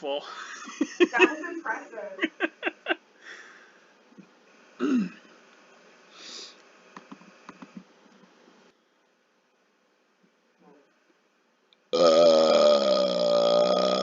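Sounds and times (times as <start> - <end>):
person sniffing and wheezing: 6.1 - 6.6.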